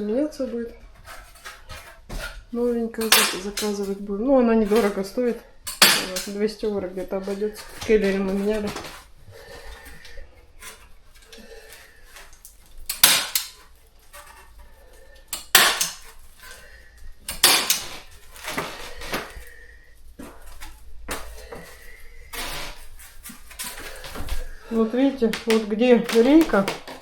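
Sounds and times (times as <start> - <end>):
knocks and clatters on wooden floor: 23.3 - 27.0.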